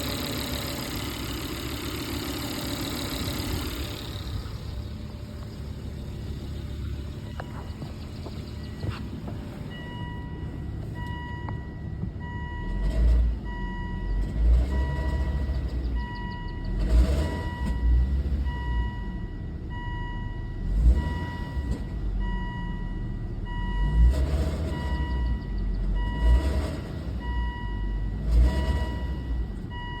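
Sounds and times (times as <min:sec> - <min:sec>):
car growling and screeching: 0:12.6 - 0:13.5, 0:14.1 - 0:18.5, 0:23.8 - 0:27.3, 0:28.2 - 0:29.7.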